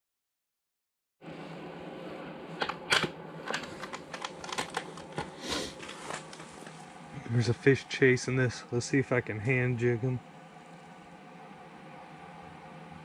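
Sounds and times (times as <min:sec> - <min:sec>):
steady hiss: 0:04.8 - 0:13.0.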